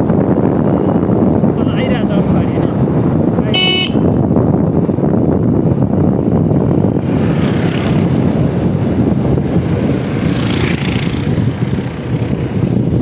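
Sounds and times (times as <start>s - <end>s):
wind buffeting microphone: 0.0s - 13.0s
tyres rolling on road: 4.3s - 13.0s.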